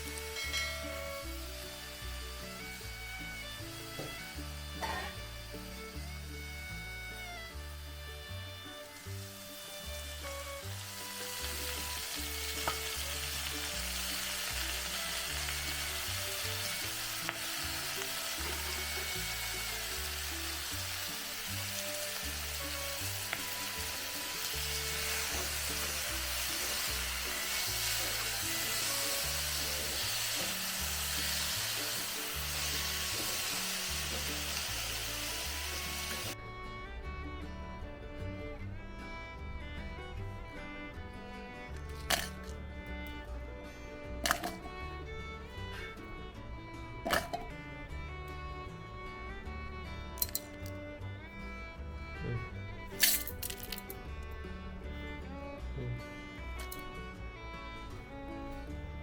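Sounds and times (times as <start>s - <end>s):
food sizzling in hot oil: 0.0s - 36.4s
background music: 0.0s - 59.0s.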